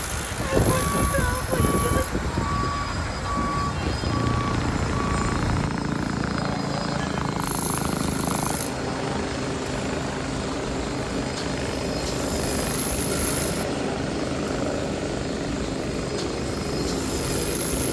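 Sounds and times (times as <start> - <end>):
heavy machine running: 0.0 - 13.7.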